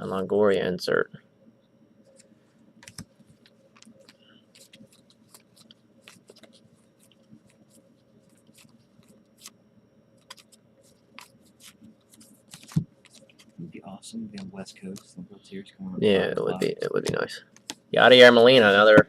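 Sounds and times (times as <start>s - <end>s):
trading cards clicking: 2.2s - 7.6s, 10.2s - 13.6s.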